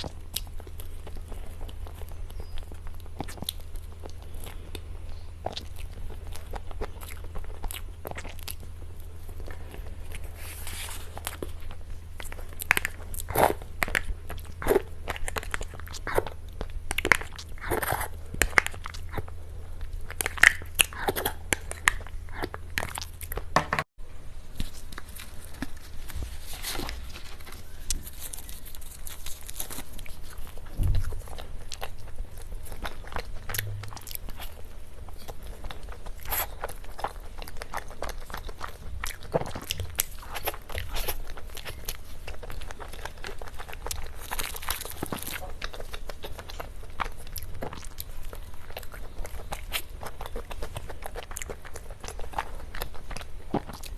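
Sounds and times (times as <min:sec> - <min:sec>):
chewing cake with crunches: 0:00.0 - 0:23.6, 0:24.4 - 0:53.9
steady low hum: 0:00.0 - 0:53.9.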